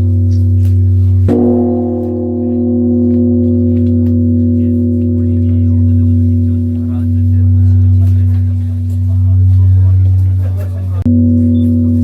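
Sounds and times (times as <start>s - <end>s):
large bronze bell ringing: 0.0s - 12.0s.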